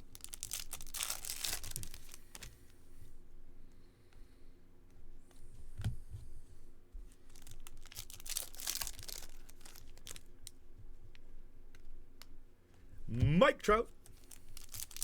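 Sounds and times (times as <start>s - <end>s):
foil wrapper tearing and crinkling: 0.0s - 2.4s, 7.3s - 10.2s, 14.3s - 15.0s.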